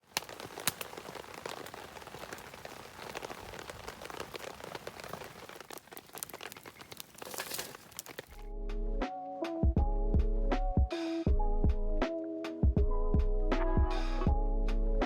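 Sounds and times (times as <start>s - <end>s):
sharp ticks and pops: 0.0s - 8.4s
steady rain falling: 0.0s - 8.4s.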